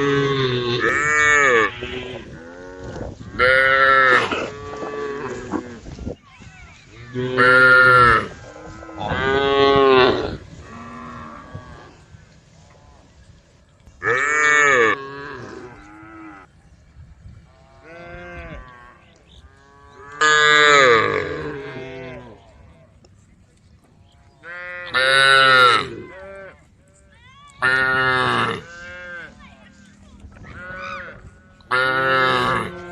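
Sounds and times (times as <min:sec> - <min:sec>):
cow mooing: 0:00.0 - 0:05.8, 0:30.5 - 0:32.9
cows mooing: 0:00.0 - 0:05.9, 0:07.0 - 0:13.1, 0:14.0 - 0:16.5, 0:17.5 - 0:22.8, 0:27.6 - 0:29.4, 0:30.5 - 0:32.9
distant cows mooing: 0:00.0 - 0:06.0, 0:07.0 - 0:13.3, 0:14.0 - 0:16.5, 0:17.5 - 0:22.9, 0:24.0 - 0:26.7, 0:27.6 - 0:32.9.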